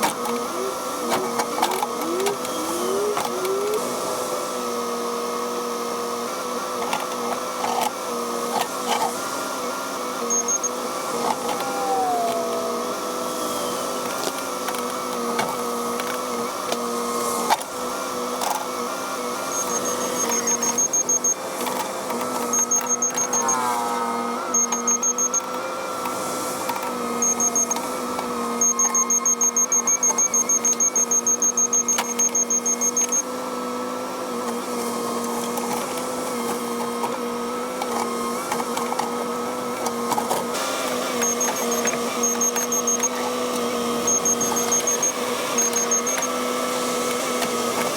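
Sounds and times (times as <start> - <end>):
high-pitched whine: 0.0 - 4.8, 10.3 - 14.2, 22.4 - 26.0, 26.6 - 33.2
excavator diesel engine and hydraulics: 0.0 - 47.9
rapid high-pitched beeping: 24.5 - 25.5, 28.6 - 33.2, 41.2 - 43.2, 44.0 - 46.2.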